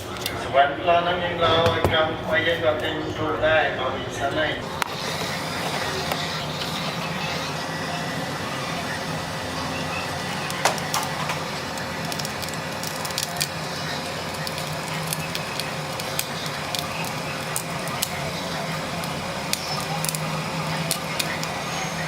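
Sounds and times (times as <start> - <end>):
glass cracking and ticking: 10.5 - 21.5.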